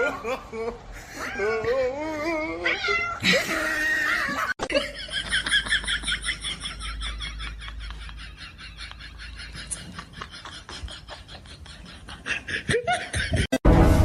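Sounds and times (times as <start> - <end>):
cat yowling: 2.5 - 3.2.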